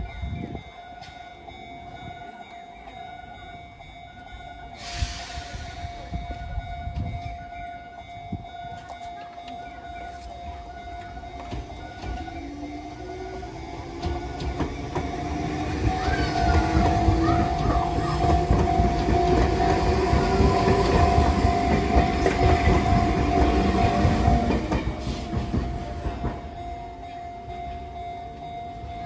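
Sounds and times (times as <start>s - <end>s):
electric train passing: 0.0s - 29.0s
level crossing warning alarm: 0.0s - 29.0s
train wheels clattering over rail joints: 11.4s - 26.6s.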